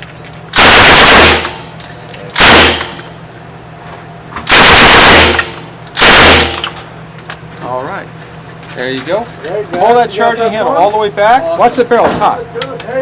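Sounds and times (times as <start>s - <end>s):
submachine gun firing bursts: 0.6s - 1.6s, 2.4s - 3.0s, 4.5s - 6.6s.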